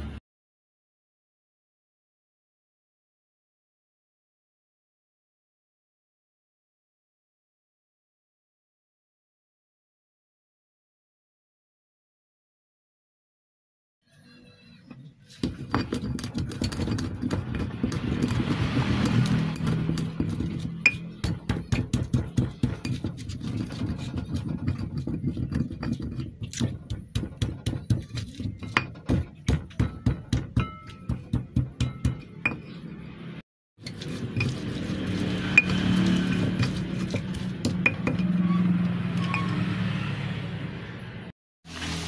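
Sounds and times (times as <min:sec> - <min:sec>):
rhythmic knocking of kitchen work: 0:15.3 - 0:33.2, 0:33.9 - 0:38.4.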